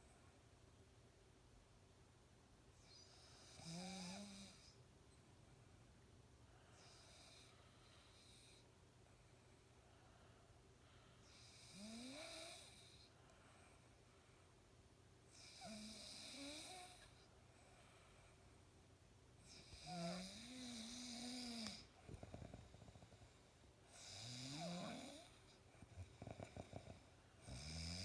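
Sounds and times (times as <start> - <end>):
man snoring: 3.4 - 4.6, 11.5 - 12.7, 15.4 - 17.0, 19.6 - 22.6, 24.0 - 25.3, 26.2 - 28.0.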